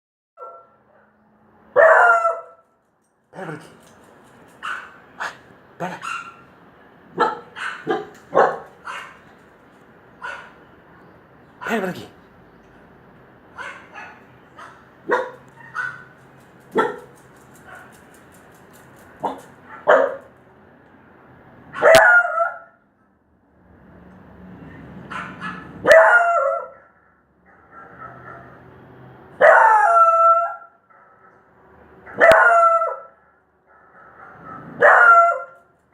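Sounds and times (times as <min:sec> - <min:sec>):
dog barking and yipping: 0:00.4 - 0:01.1, 0:01.7 - 0:02.7, 0:03.4 - 0:09.5, 0:10.2 - 0:10.6, 0:13.5 - 0:20.4, 0:21.7 - 0:22.7, 0:24.7 - 0:26.9, 0:27.5 - 0:28.6, 0:29.4 - 0:31.4, 0:32.0 - 0:35.7.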